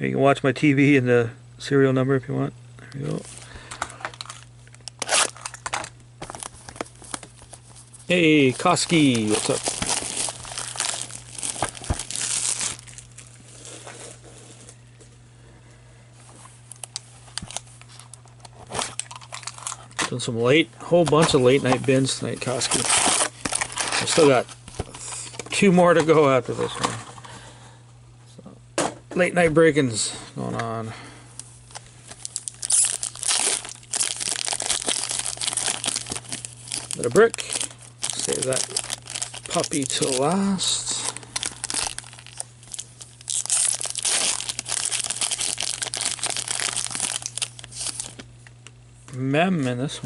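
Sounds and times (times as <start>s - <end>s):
low electrical hum: 0.0s - 50.0s
wrapper crinkling: 3.1s - 14.7s, 16.7s - 20.0s, 21.3s - 25.4s, 31.6s - 48.3s.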